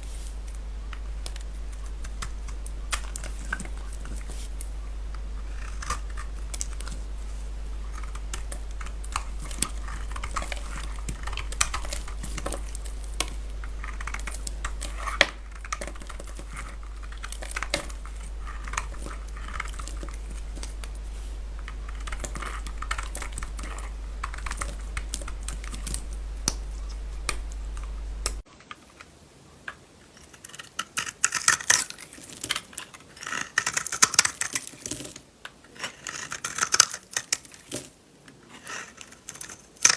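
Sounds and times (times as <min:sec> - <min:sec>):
crunching and scraping: 0:00.0 - 0:28.5
steady low hum: 0:00.0 - 0:28.5.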